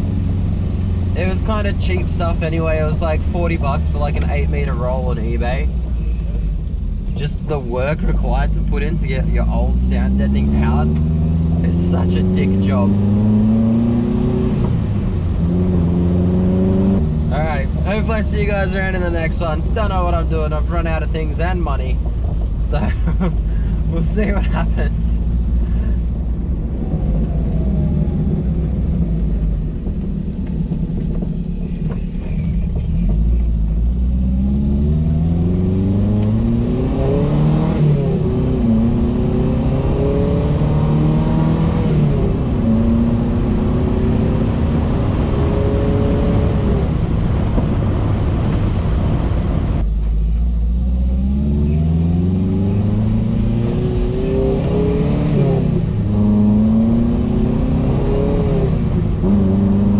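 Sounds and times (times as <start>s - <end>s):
car engine revving while driving: 0.0s - 59.9s.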